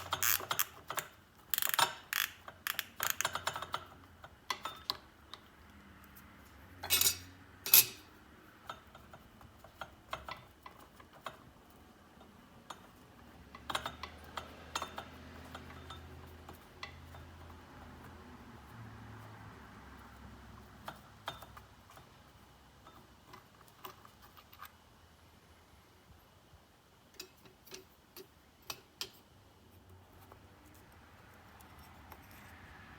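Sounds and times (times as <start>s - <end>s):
hand ratchet clicking: 0.0s - 3.8s
small metal parts clicking: 0.0s - 5.1s, 6.8s - 8.1s.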